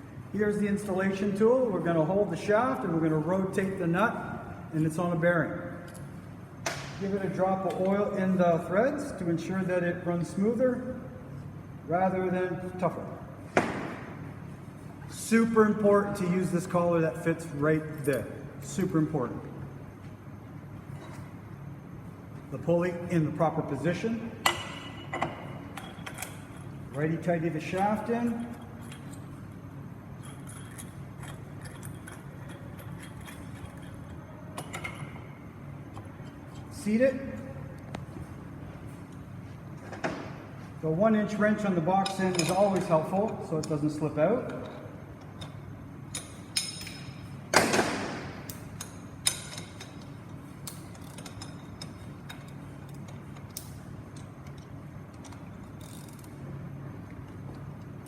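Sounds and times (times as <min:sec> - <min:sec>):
steady low hum: 0:00.0 - 0:58.0.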